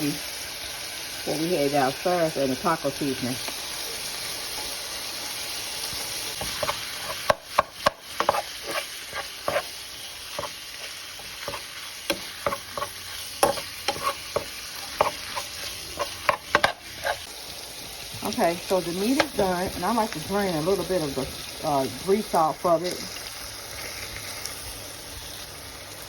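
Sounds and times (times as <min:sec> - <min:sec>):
meat sizzling in a pan: 0:00.0 - 0:26.0
utensil scraping a pan: 0:05.9 - 0:17.3.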